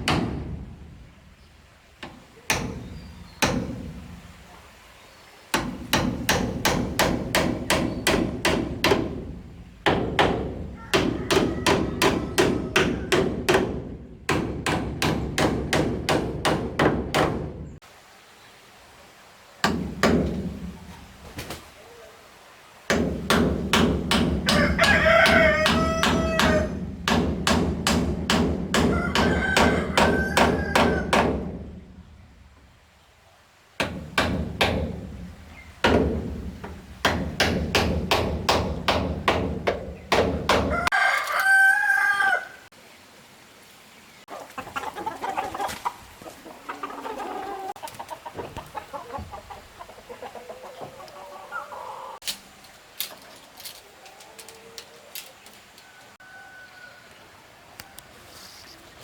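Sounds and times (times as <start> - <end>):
rooster crowing: 10.7 - 13.2, 24.4 - 26.8, 28.8 - 31.2, 40.6 - 42.7, 55.8 - 58.0
rapid hammer blows: 33.8 - 40.7.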